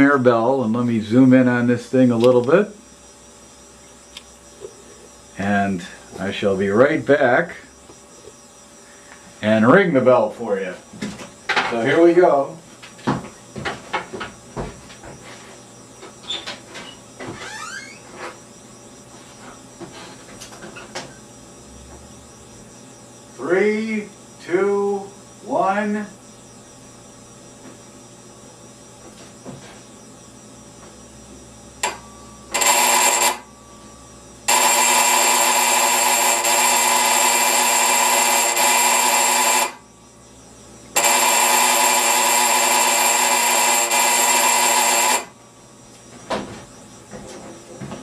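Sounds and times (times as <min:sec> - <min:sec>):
electric doorbell ringing harshly: 0:31.8 - 0:33.5, 0:34.5 - 0:39.8, 0:41.0 - 0:45.3.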